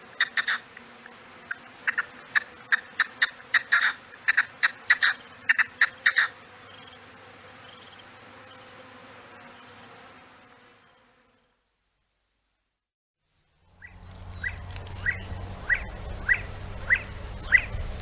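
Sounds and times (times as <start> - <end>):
bird clucking calls: 0.2 - 0.7, 1.5 - 6.4, 13.8 - 17.8.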